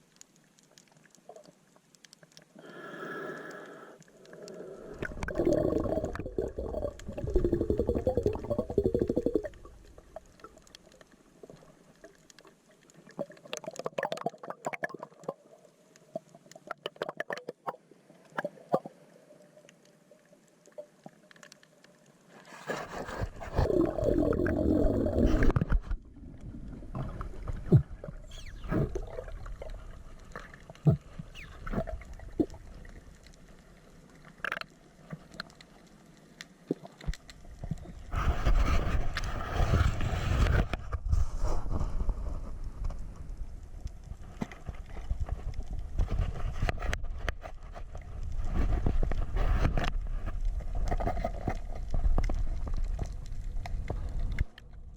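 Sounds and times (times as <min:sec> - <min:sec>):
bubbly gurgling water: 0:02.5 - 0:19.0, 0:23.0 - 0:35.7.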